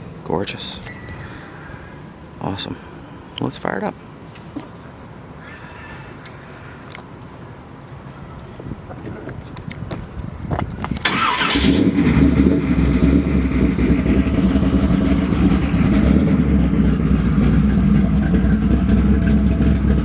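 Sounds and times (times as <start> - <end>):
car engine cranking: 11.0 - 20.0
loud engine idle: 11.2 - 20.0.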